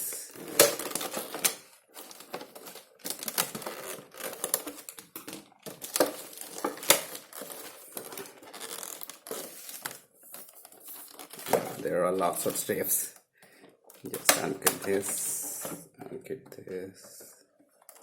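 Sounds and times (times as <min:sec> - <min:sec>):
cardboard and plastic rustling: 0:00.0 - 0:15.9, 0:17.0 - 0:18.0.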